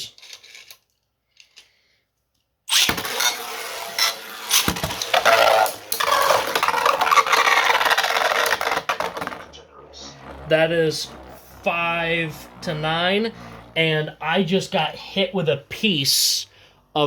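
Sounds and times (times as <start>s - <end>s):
spinning tops clashing: 2.7s - 9.4s
spinning tops launcher ripped: 2.7s - 9.5s
spinning tops scraping: 2.7s - 14.7s.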